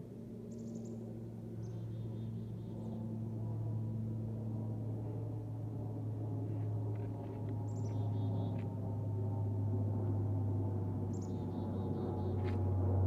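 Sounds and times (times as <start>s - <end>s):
aircraft engine drone: 0.0s - 13.0s
bird chirps: 11.1s - 12.3s.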